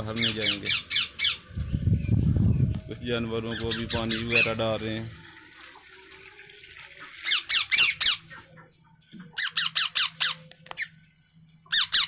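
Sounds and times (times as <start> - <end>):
birds squawking: 0.0 - 1.7, 3.5 - 4.6, 6.9 - 8.6, 9.2 - 11.0, 11.7 - 12.0.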